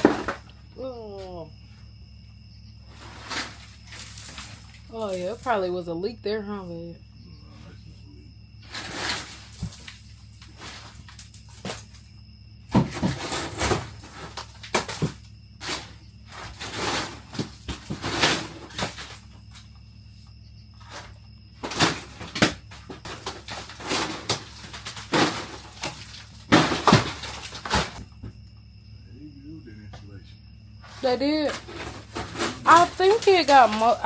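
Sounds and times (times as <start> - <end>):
roof material crunching and scraping: 12.8 - 19.6, 20.8 - 28.1, 30.9 - 34.0.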